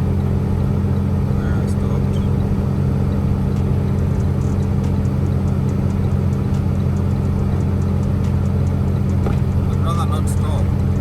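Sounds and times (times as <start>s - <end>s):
truck engine and road noise drone: 0.0s - 11.0s
faint ticks: 3.5s - 9.4s.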